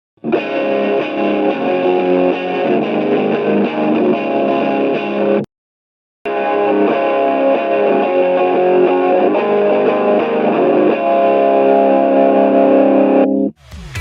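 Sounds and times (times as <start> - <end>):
overdriven electric guitar: 0.2 - 5.5, 6.3 - 14.0
music with a beat: 13.6 - 14.0.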